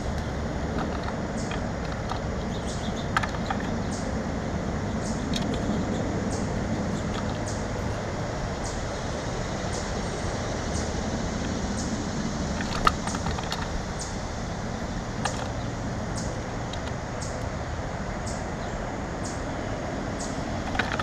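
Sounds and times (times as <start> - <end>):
outdoor background rumble: 0.0 - 21.0.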